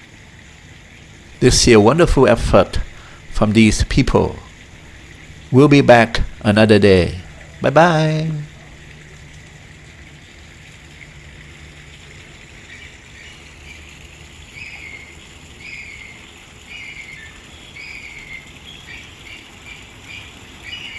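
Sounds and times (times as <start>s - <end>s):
low background hum: 1.3s - 9.3s.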